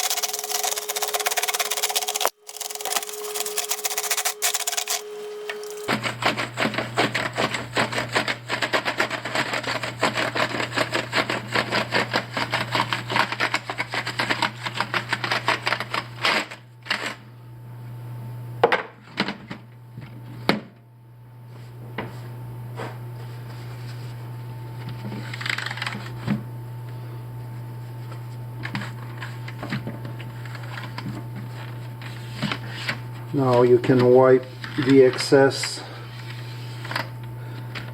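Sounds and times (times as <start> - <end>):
keycaps clattering: 0.0 - 6.4
brush scrubbing keyboard keys: 0.0 - 16.4.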